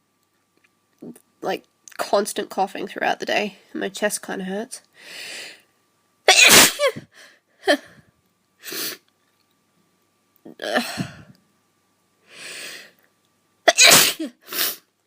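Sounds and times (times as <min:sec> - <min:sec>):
woman coughing: 0:06.3 - 0:07.0, 0:13.7 - 0:14.4
woman sneezing: 0:06.3 - 0:07.0, 0:13.7 - 0:14.8.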